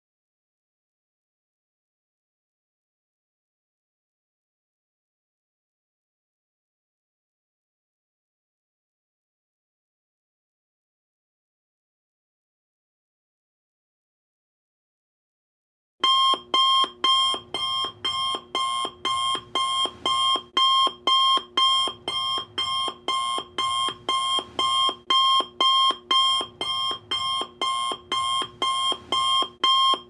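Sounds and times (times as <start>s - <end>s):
alarm clock ringing: 16.0s - 30.0s.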